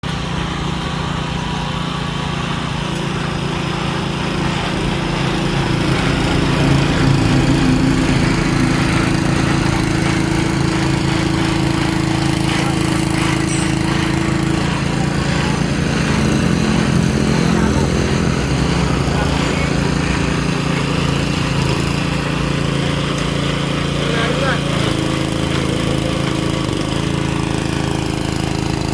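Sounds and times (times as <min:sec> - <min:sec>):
drilling rig engine running: 0:00.0 - 0:28.9
high steady tone: 0:04.0 - 0:23.7.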